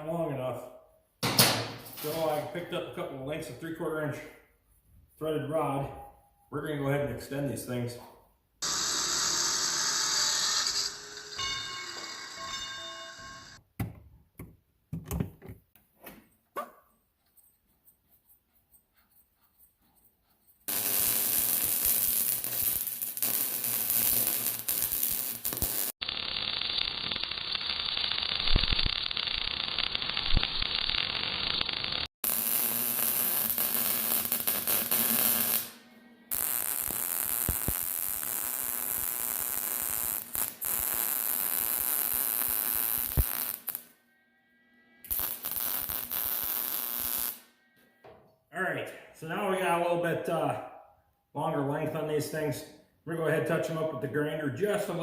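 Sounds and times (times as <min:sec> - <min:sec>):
welder arc crackling and buzzing: 0:08.6 - 0:11.4, 0:20.7 - 0:43.9, 0:45.0 - 0:47.5.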